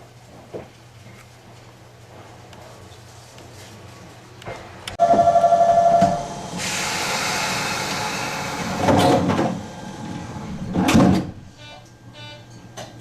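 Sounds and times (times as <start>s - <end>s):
train warning buzzer pulsing: 5.0s - 6.4s, 11.6s - 12.4s
compressed air hissing: 6.3s - 8.8s.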